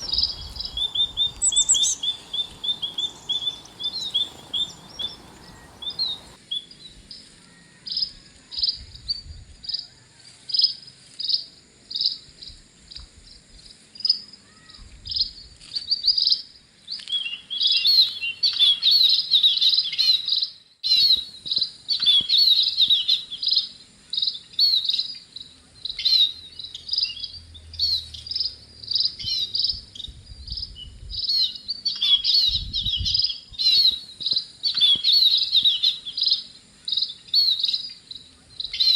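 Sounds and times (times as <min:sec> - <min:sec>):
high insect buzz: 0:00.0 - 0:06.4
songbirds chirping and twittering: 0:00.0 - 0:08.2, 0:15.1 - 0:38.9.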